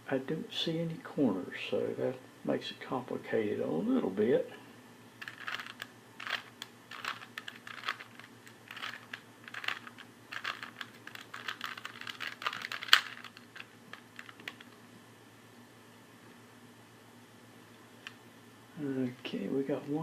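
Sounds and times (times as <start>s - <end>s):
puzzle cube plastic clicks: 5.2s - 14.8s.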